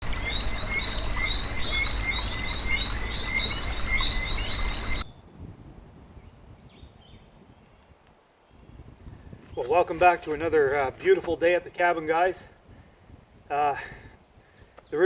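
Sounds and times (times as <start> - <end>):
frogs chirping: 0.0 - 5.1.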